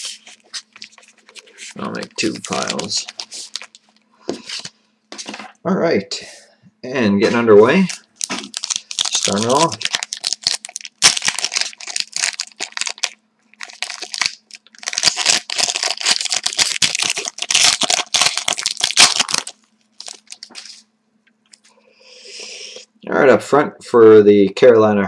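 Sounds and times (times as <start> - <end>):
wrapper crinkling: 0.0 - 5.4, 7.8 - 20.8.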